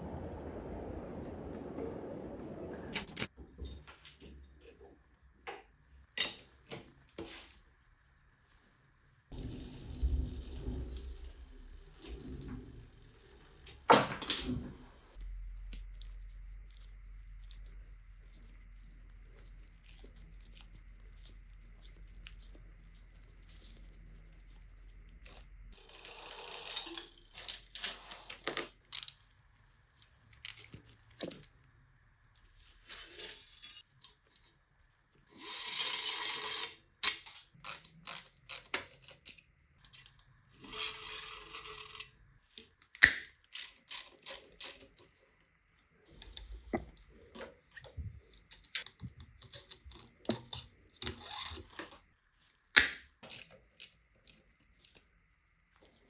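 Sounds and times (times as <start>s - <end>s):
scrubbing or rustling noise: 14.5s - 25.2s.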